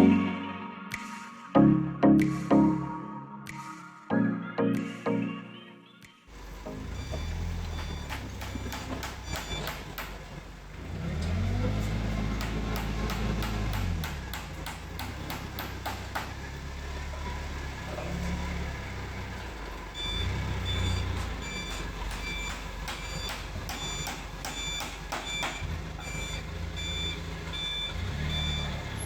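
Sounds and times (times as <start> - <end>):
heavy machine engine revving: 6.3 - 29.0
reversing alarm beeping: 6.5 - 10.2, 20.0 - 29.0
sharp knocks: 7.0 - 10.4, 12.2 - 16.6, 21.2 - 25.7.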